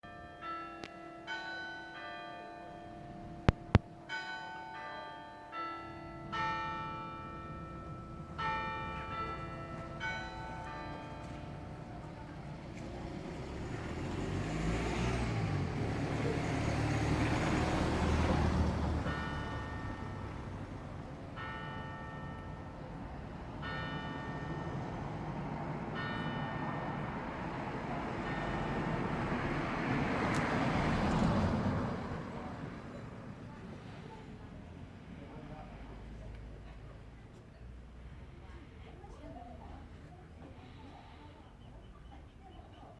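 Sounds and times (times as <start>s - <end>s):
church bells ringing: 0.0s - 33.6s
vehicle low rumble: 6.2s - 42.9s.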